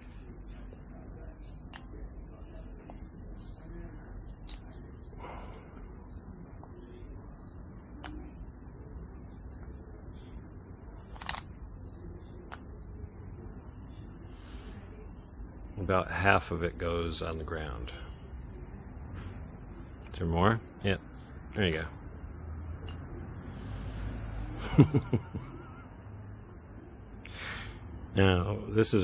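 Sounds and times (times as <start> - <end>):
insects chorus: 0.0 - 29.0
sharp clicks: 11.1 - 11.5.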